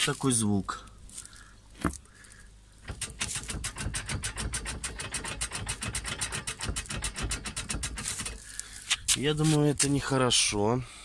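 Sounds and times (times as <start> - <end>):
gearbox metallic rattling: 2.8 - 8.6.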